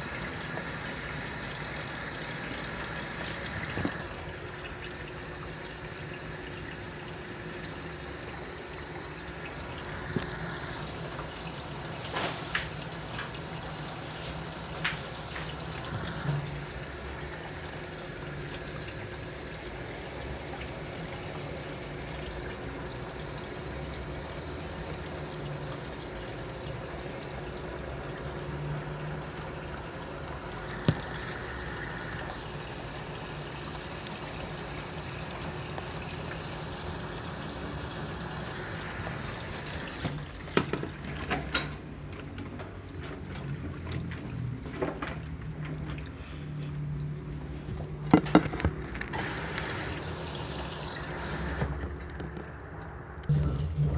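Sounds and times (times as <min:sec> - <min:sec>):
washing machine filling with water: 0:00.0 - 0:53.9.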